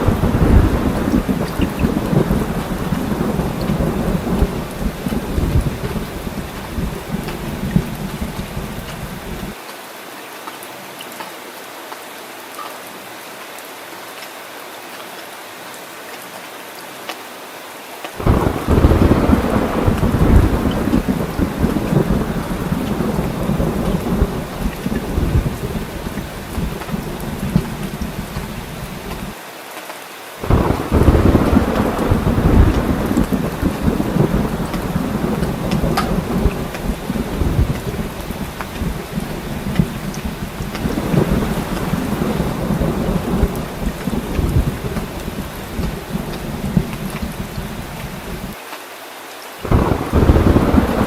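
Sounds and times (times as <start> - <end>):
thunder rumbling: 0.0 - 9.6, 18.2 - 29.4, 30.4 - 48.6, 49.6 - 51.0
steady rain: 0.0 - 51.0.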